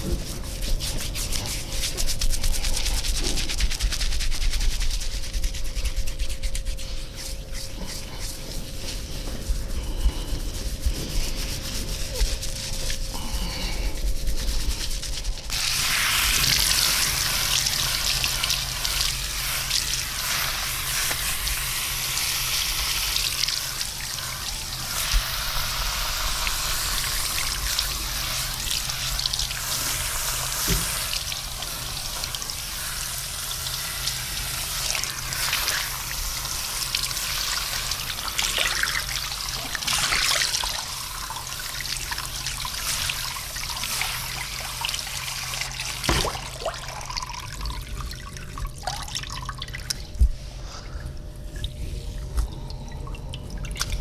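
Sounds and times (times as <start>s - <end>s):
hands rubbing: 0.0s - 15.6s
water running: 0.0s - 50.1s.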